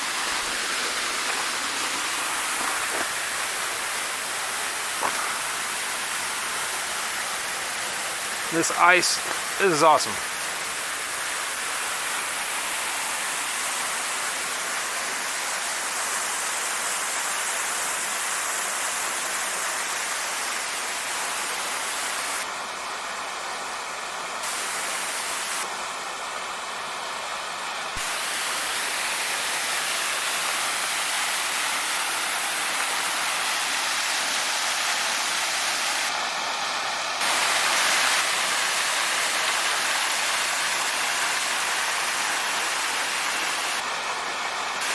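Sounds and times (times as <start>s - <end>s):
waterfall rushing: 0.0s - 15.9s, 37.2s - 44.9s.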